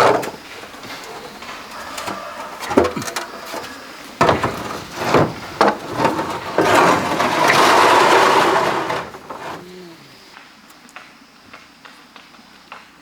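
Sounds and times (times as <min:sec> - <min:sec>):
rasping scraping noise: 0:00.0 - 0:09.9.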